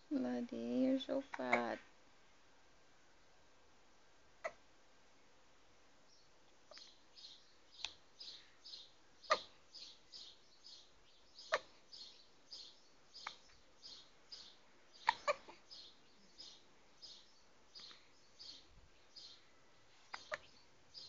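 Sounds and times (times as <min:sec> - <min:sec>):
baby hiccuping: 0:04.4 - 0:04.6, 0:15.0 - 0:15.7.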